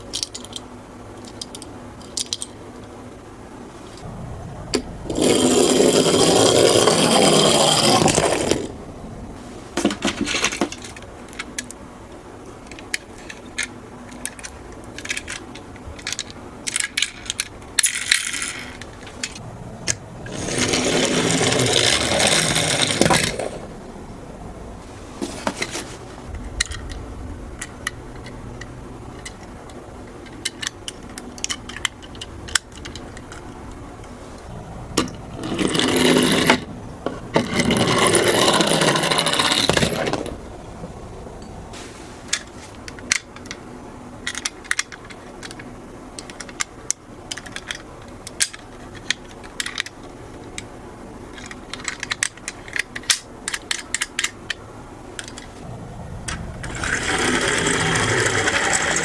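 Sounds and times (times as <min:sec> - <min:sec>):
toy cars clicking together: 0:00.0 - 0:02.6, 0:12.6 - 0:23.6, 0:27.6 - 0:33.6, 0:42.3 - 0:43.6, 0:44.2 - 0:55.6, 0:56.3 - 0:59.0
toy cars rattling down a slope: 0:05.1 - 0:08.8, 0:12.7 - 0:23.7, 0:35.0 - 0:36.7, 0:37.3 - 0:40.4, 0:51.3 - 0:55.6, 0:56.3 - 0:59.0.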